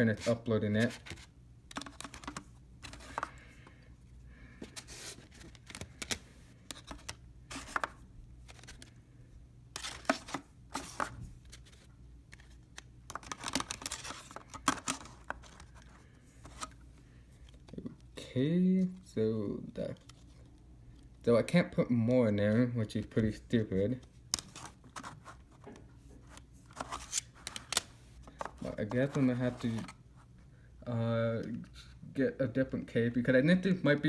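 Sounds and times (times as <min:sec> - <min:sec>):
plastic disks clicking and scraping: 0:00.2 - 0:03.8, 0:04.6 - 0:09.0, 0:09.8 - 0:16.8, 0:24.3 - 0:30.0.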